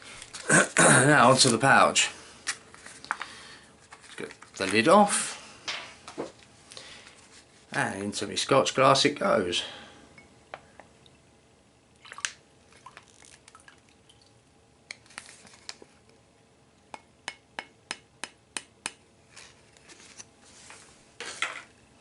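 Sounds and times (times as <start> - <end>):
soft handling noise: 2.4 - 8.3, 14.9 - 16.2, 19.2 - 21.8.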